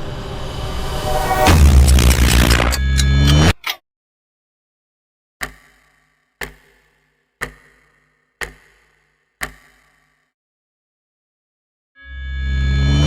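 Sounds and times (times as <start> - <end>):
synthetic clock ticks: 5.4 - 10.3.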